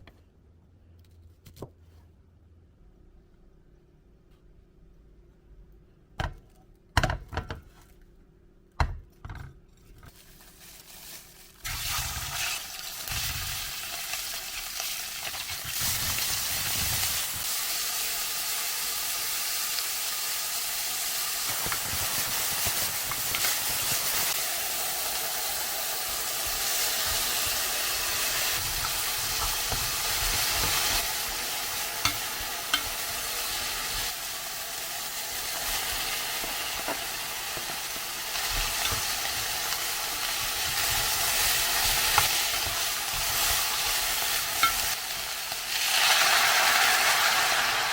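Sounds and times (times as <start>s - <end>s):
food sizzling in a pan: 10.4s - 47.9s.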